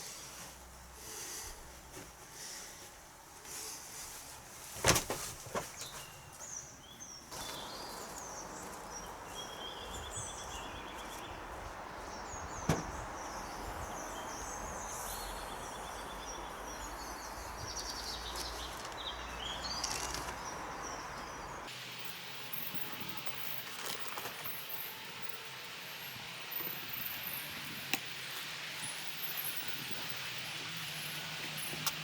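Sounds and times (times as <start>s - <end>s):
birds chirping: 5.6s - 21.7s.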